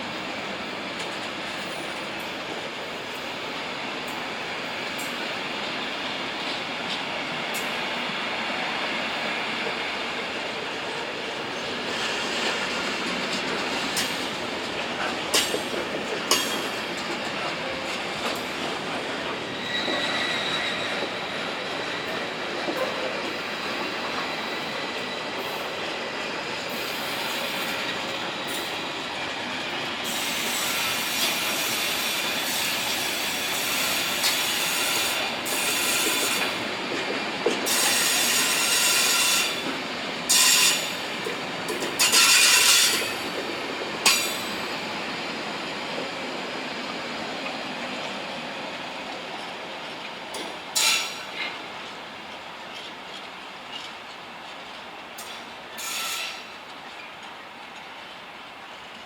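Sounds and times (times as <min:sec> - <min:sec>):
train rolling rumble: 0:00.0 - 0:59.0
high-pitched wheel squeal: 0:19.6 - 0:21.4.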